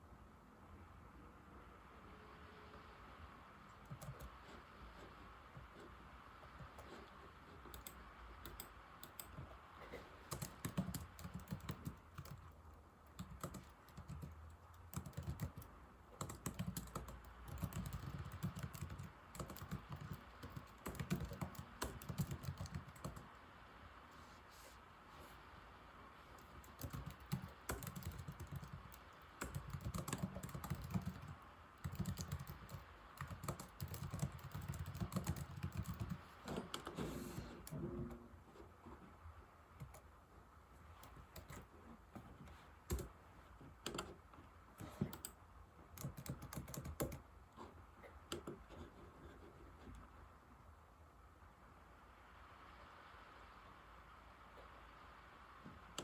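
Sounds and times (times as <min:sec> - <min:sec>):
laptop keyboard typing: 0:03.7 - 0:23.4, 0:26.4 - 0:37.8, 0:40.9 - 0:44.2, 0:44.8 - 0:47.3, 0:48.2 - 0:49.5.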